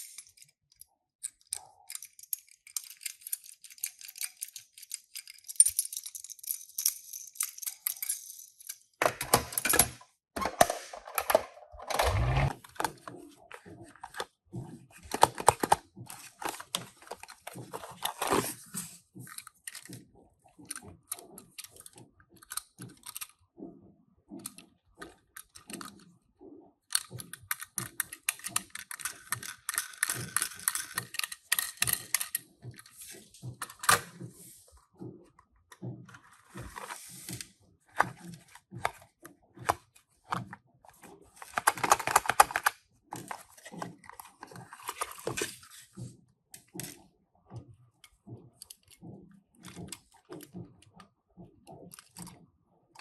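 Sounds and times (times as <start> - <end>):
toy cars clicking and rattling: 0.0 - 9.9, 15.0 - 23.4, 26.8 - 34.7, 37.9 - 45.9, 51.9 - 52.3
packaging rustling: 36.4 - 45.9.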